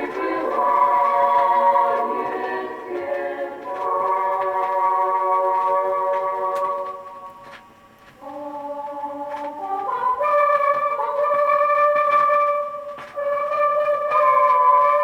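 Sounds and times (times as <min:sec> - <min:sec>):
vinyl record surface clicks: 0:00.0 - 0:11.3
held instrumental chords: 0:00.0 - 0:15.0.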